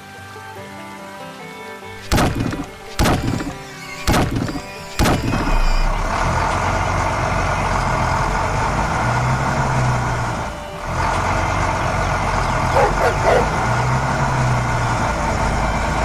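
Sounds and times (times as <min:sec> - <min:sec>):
sharp knocks: 0:02.0 - 0:05.7.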